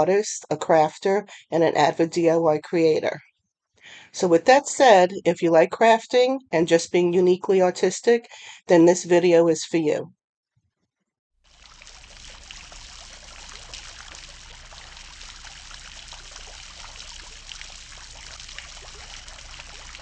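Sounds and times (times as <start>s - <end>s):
fountain water trickling and splashing: 11.5s - 20.0s.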